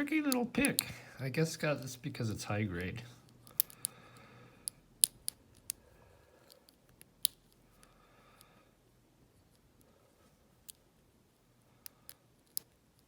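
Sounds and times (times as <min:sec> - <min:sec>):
sharp metallic clicks: 0:00.2 - 0:00.9.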